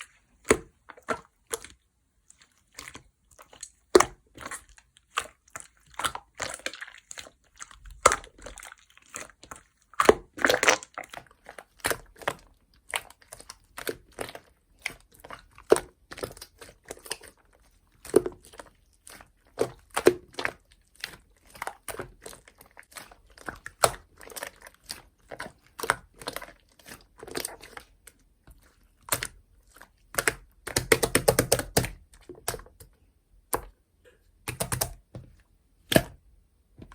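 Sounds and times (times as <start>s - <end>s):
slime clicking and popping: 30.1s - 32.8s, 34.5s - 35.0s.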